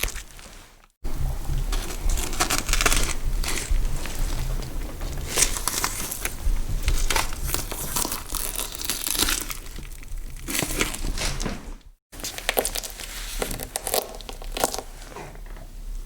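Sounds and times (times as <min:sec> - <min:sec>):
gory crackling and crunching: 0:00.0 - 0:15.2
low hum: 0:01.0 - 0:07.8.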